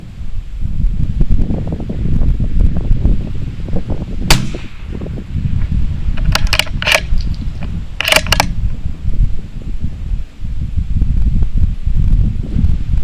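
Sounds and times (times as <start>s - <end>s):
wind buffeting microphone: 0.0s - 13.0s
rifle shot: 4.3s - 5.0s
sharp clicks: 6.2s - 8.6s.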